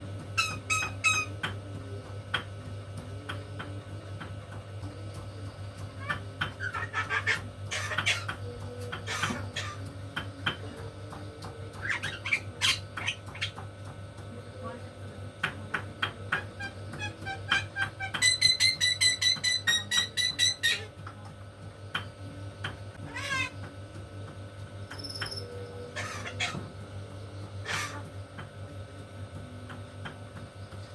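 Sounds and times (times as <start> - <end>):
steady low hum: 0.0 - 30.9
starling calling: 0.4 - 1.5, 5.9 - 10.0, 11.8 - 13.6, 16.3 - 20.9, 23.0 - 23.6, 24.9 - 26.7, 27.6 - 28.1.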